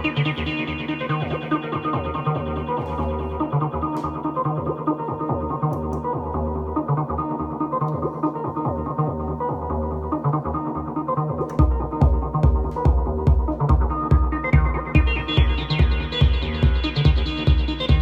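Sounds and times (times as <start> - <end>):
synth bass line: 0.0 - 18.0
drum machine kick and hi-hats: 11.4 - 18.0.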